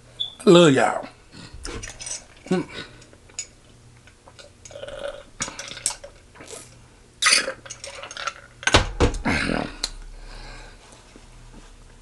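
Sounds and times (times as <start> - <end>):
eating sounds: 4.0 - 8.2.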